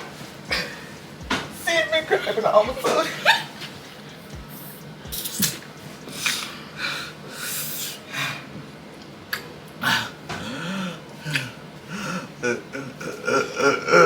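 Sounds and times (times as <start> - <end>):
person breathing hard and sniffing: 4.5 - 8.6, 9.8 - 12.4.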